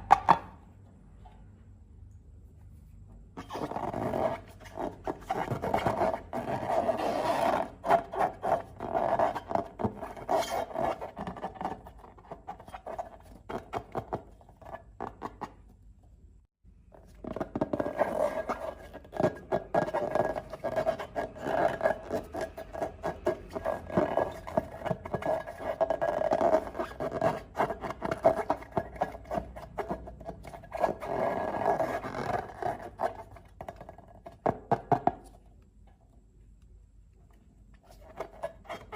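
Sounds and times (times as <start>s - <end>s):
slime crackling and scraping: 17.0s - 34.2s.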